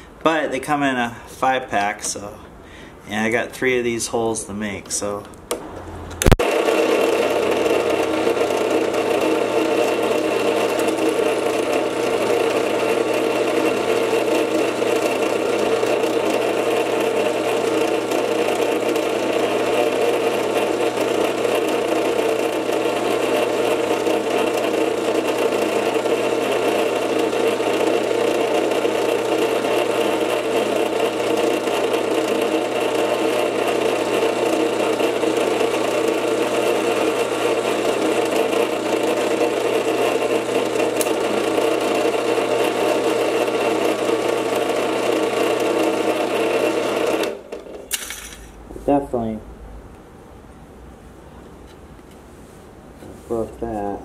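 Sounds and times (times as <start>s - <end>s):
drill press whirring: 5.4s - 48.6s.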